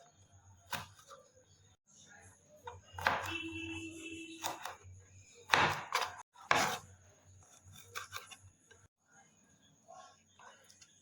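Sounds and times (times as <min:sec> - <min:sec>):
knife cutting beans on board: 0:05.5 - 0:06.8, 0:07.7 - 0:08.4.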